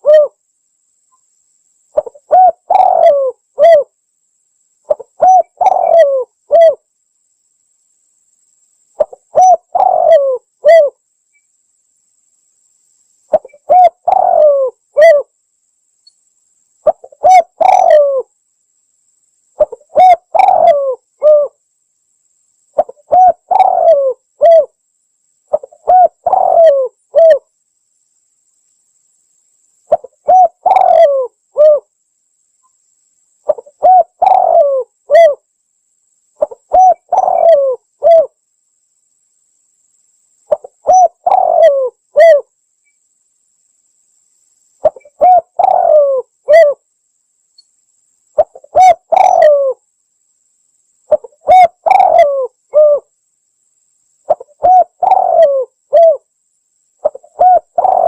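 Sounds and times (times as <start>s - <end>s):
dove cooing: 0.0s - 0.4s, 2.0s - 3.9s, 4.9s - 6.8s, 9.0s - 11.0s, 13.3s - 15.3s, 16.8s - 18.3s, 19.6s - 21.6s, 22.8s - 24.8s, 25.5s - 27.4s, 29.9s - 31.9s, 33.5s - 35.4s, 36.4s - 38.4s, 40.5s - 42.5s, 44.8s - 46.8s, 48.4s - 49.8s, 51.1s - 53.1s, 54.3s - 56.3s, 57.0s - 58.0s.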